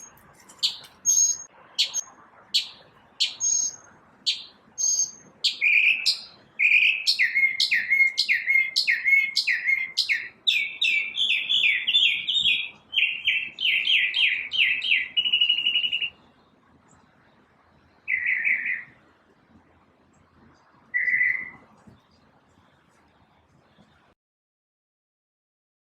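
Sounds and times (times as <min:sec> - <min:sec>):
bird singing repeated chirps: 0:00.0 - 0:16.2, 0:17.9 - 0:19.0, 0:20.9 - 0:21.6
short bird calls: 0:02.6 - 0:16.2, 0:18.1 - 0:19.0, 0:21.0 - 0:21.6.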